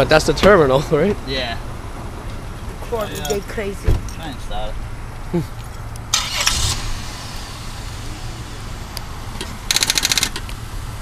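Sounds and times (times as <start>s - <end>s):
car starter clicking rapidly: 6.1s - 6.8s, 9.7s - 10.5s.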